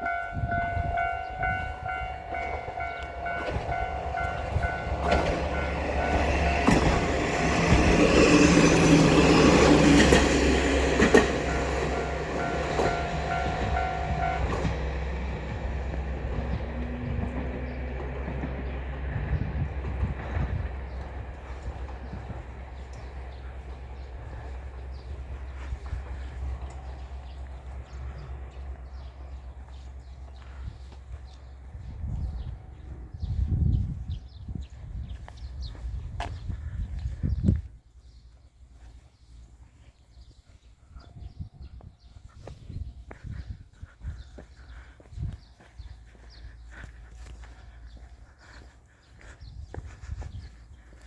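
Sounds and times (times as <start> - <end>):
train wheels clacking: 0.0 - 27.6
diesel train rumble: 0.0 - 51.0.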